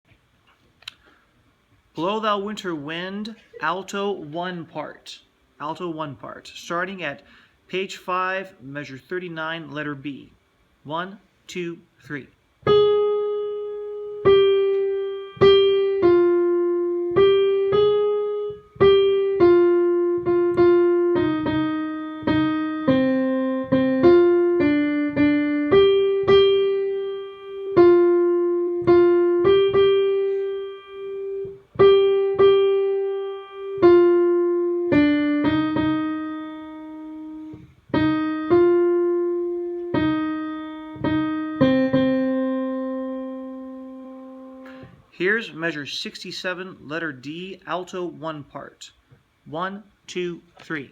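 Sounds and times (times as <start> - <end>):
piano playing single melody: 12.6 - 44.9.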